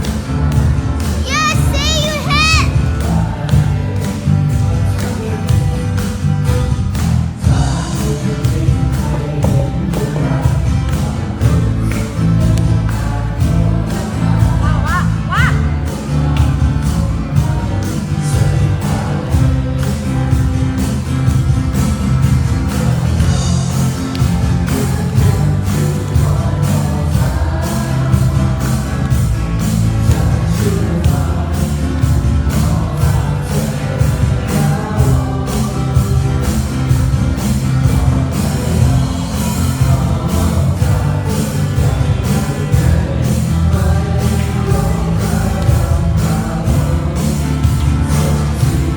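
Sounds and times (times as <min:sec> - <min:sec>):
band with heavy bass: 0:00.0 - 0:48.9
person singing: 0:01.2 - 0:06.1, 0:07.4 - 0:20.3.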